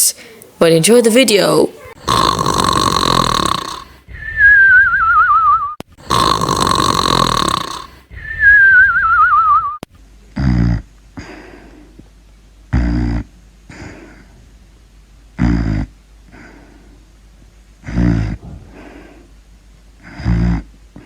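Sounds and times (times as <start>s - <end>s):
low snort: 2.0s - 4.6s, 6.0s - 8.6s, 10.4s - 12.0s, 12.7s - 14.4s, 15.4s - 16.8s, 17.8s - 19.3s, 20.0s - 21.0s
cartoon snoring with whistle: 2.0s - 9.8s, 10.4s - 10.9s, 12.7s - 13.3s, 15.4s - 16.0s, 17.8s - 18.4s, 20.1s - 20.7s.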